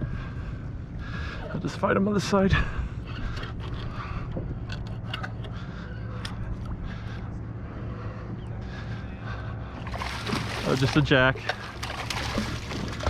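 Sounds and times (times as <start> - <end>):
low hum: 2.5 - 13.0.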